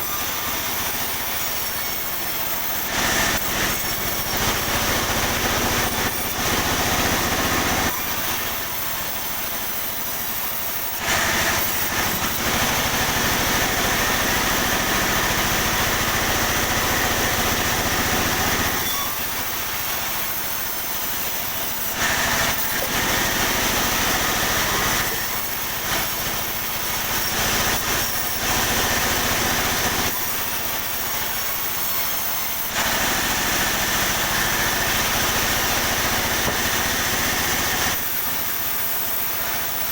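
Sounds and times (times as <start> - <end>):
sawmill saw whining: 0.0 - 39.9.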